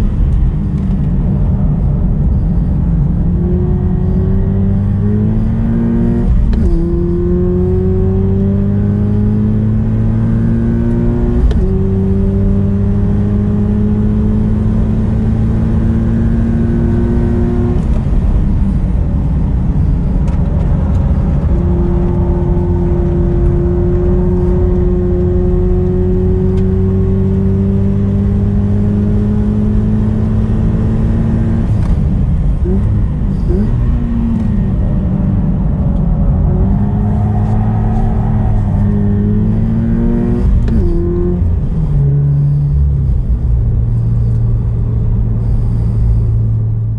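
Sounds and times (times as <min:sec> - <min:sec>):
car engine accelerating hard: 0:00.0 - 0:46.9
engine throttle blips: 0:29.7 - 0:46.9.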